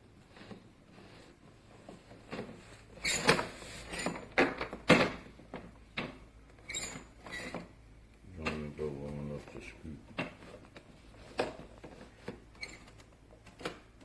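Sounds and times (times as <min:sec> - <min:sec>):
plastic toy excavator clunking: 0:02.1 - 0:06.3.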